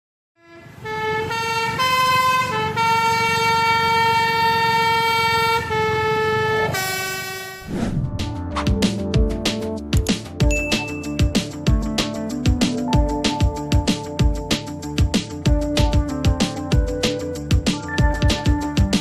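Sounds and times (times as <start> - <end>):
multi-tone bus air horn tune: 0.4 - 7.7, 15.3 - 19.0
music with clinking percussion: 9.9 - 12.0.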